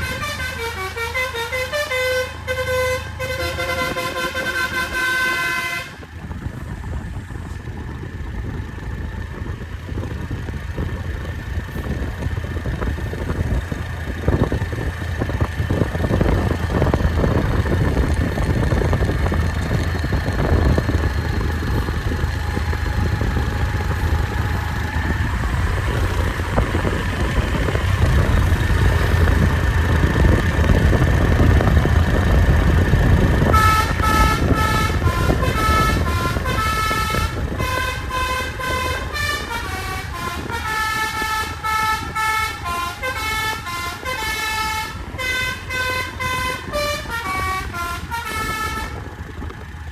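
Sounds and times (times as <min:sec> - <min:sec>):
multi-note musical bus horn: 0:00.0 - 0:06.2, 0:33.3 - 0:49.4
bus engine and road rumble: 0:00.0 - 0:49.9.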